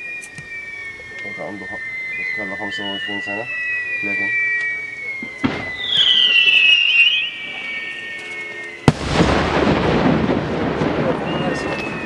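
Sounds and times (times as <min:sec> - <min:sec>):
falling whistle: 0:00.0 - 0:12.0
firework launch report: 0:00.0 - 0:12.0
rolling rumble of echo: 0:04.8 - 0:12.0
loud firework bang: 0:05.2 - 0:06.5, 0:08.9 - 0:12.0.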